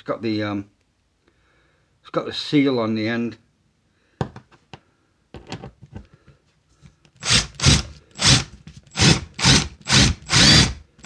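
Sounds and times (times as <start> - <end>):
impact driver bursts: 7.2 - 10.9.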